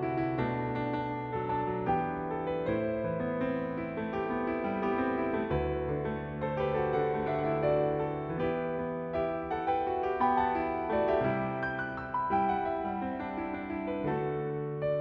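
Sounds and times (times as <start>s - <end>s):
slow lyrical piano solo: 0.0s - 15.0s.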